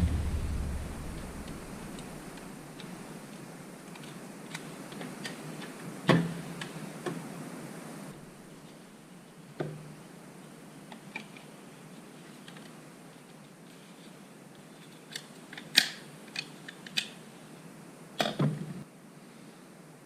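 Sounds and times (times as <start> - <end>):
sharp knocks: 0.0 - 2.4
faint hiss: 0.0 - 20.0.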